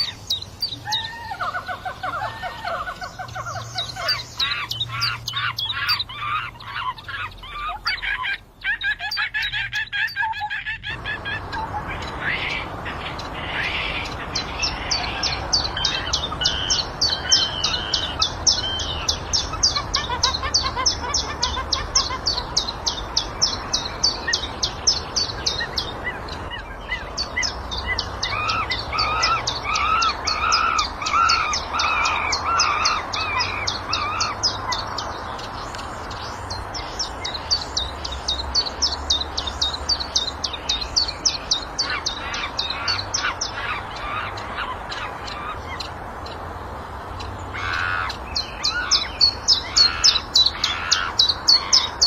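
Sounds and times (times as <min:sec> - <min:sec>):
bird warbling calls: 0:00.0 - 0:46.4, 0:47.2 - 0:52.0
birds chirping: 0:00.0 - 0:52.0.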